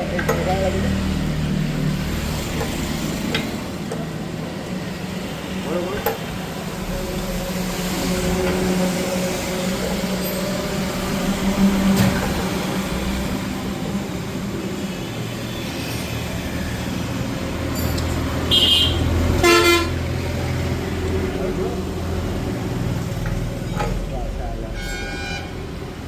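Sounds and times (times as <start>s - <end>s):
street traffic: 0.0s - 26.0s
vehicle horn toot: 18.5s - 20.0s, 24.7s - 25.7s.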